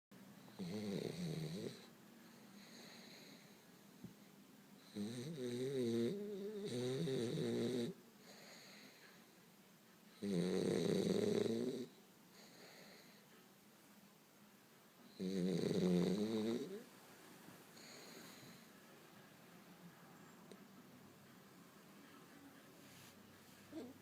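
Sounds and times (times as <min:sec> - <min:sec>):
dog snoring: 0:00.5 - 0:01.9, 0:04.8 - 0:09.0, 0:10.2 - 0:13.2, 0:15.1 - 0:16.9
dog breathing softly: 0:17.7 - 0:18.8.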